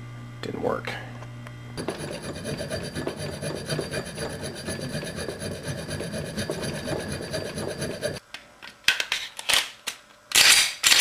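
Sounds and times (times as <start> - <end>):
hand file scraping metal: 1.8 - 8.2.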